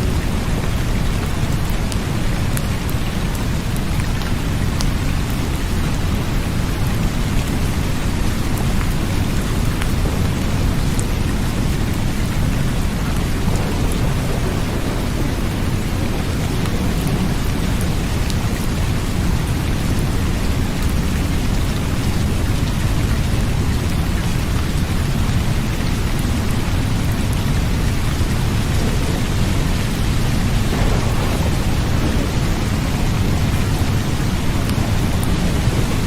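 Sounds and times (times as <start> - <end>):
steady rain: 0.0 - 36.0
deep low rumble: 27.4 - 36.0.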